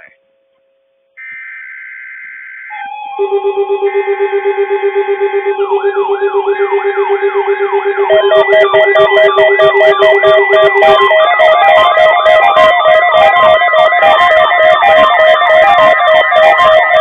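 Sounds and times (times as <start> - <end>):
wailing electronic sweep: 1.2 - 17.0
fast-pulsing low tone: 3.1 - 17.0
clicking beat: 8.0 - 17.0.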